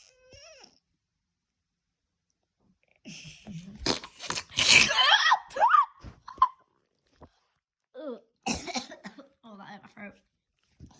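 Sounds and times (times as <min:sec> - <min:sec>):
person making mouth noises: 0:03.6 - 0:05.1.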